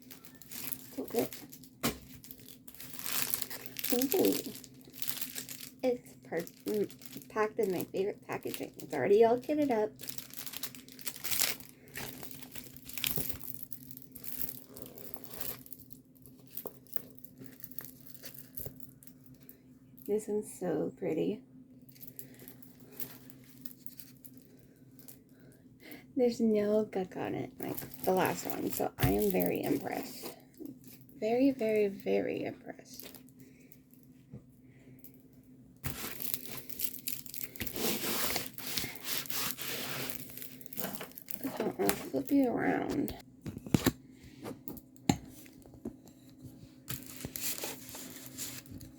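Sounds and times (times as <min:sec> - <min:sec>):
packaging crinkling and tearing: 0:00.0 - 0:19.4, 0:27.6 - 0:31.0, 0:35.8 - 0:43.2, 0:46.9 - 0:48.9.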